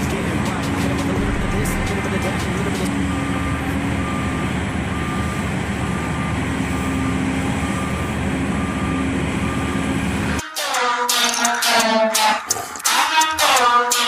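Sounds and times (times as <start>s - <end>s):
rap music: 0.0s - 3.0s, 10.4s - 14.0s
heavy machinery running: 0.0s - 14.0s
reversing alarm beeps: 2.8s - 12.4s.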